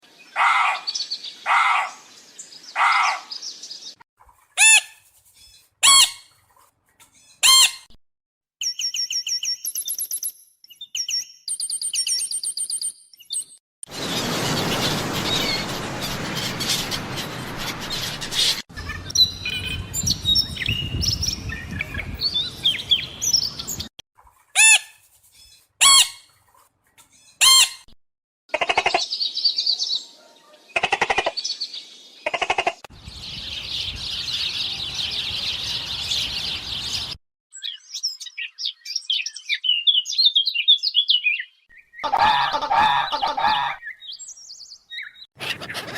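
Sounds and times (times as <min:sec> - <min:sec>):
many birds chirping: 0:00.0 - 0:04.0, 0:13.2 - 0:24.5, 0:28.6 - 0:45.9
loud pitched bird calls: 0:00.3 - 0:03.5, 0:13.9 - 0:23.9, 0:28.5 - 0:45.9
fast stuttering bird trills: 0:13.9 - 0:19.8, 0:45.0 - 0:45.9.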